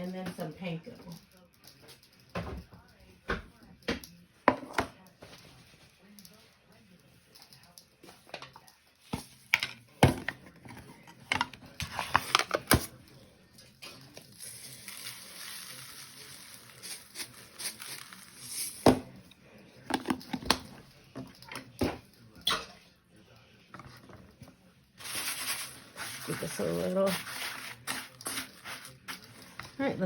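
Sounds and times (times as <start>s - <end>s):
dishes and utensils clattering: 8.1s - 12.9s, 19.8s - 22.7s.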